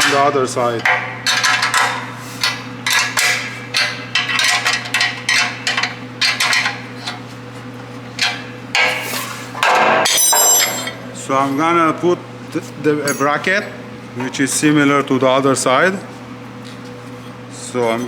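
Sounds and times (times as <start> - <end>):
low steady hum: 8.9 - 16.1.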